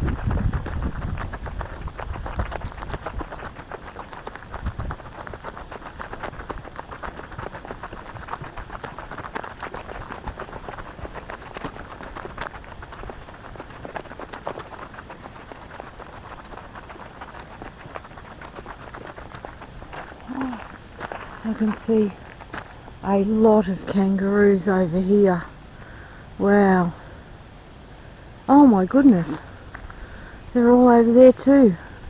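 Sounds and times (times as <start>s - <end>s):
footsteps crunching on dry trail: 0.0s - 32.0s.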